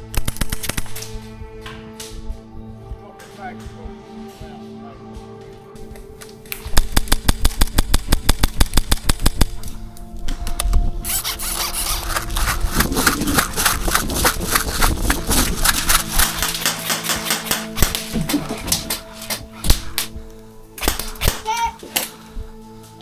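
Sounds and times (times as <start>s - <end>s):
airsoft rifle firing full auto: 20.8s - 21.4s.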